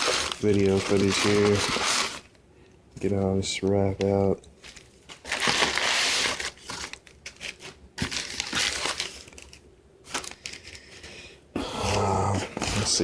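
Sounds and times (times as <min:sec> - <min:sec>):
packing wrap crinkling: 0:00.0 - 0:02.4, 0:04.6 - 0:10.9.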